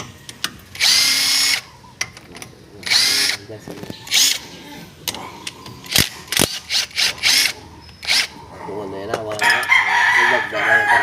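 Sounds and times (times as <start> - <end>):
rooster crowing: 9.4 - 11.0.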